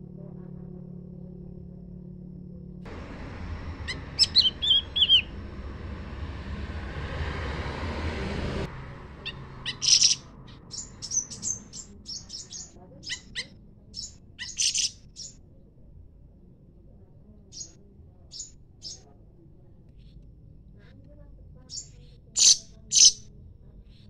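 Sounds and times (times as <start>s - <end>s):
steady rushing hiss: 2.9s - 8.6s
songbirds chirping: 2.9s - 15.4s, 17.4s - 19.1s, 21.6s - 23.3s.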